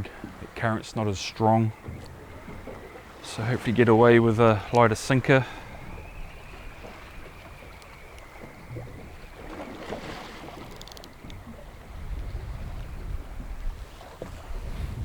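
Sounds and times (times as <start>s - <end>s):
water lapping against boat hull: 0.0s - 15.0s
wind buffeting microphone: 0.0s - 15.0s
light clicks: 10.6s - 11.4s.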